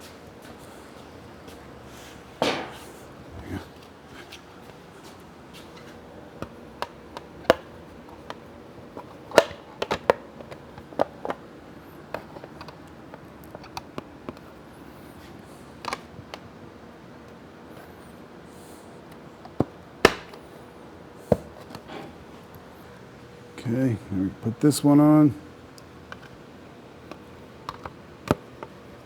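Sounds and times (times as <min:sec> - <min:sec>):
clicks and knocks on motorcycle parts: 0:19.4 - 0:20.4.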